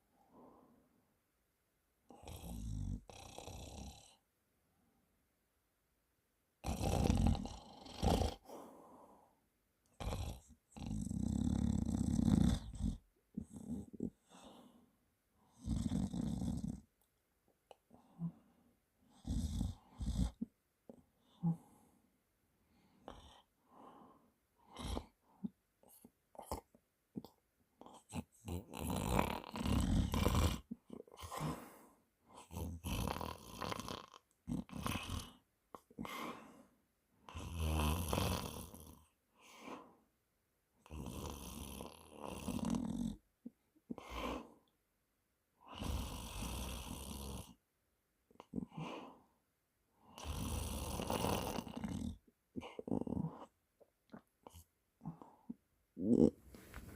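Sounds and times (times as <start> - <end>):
man snoring loudly: 2.1 - 4.2, 6.6 - 8.4, 10.0 - 13.9, 15.6 - 16.8, 19.2 - 20.4, 28.1 - 30.6, 32.4 - 35.4, 37.3 - 39.0, 40.8 - 43.2, 45.7 - 47.6, 50.2 - 52.2.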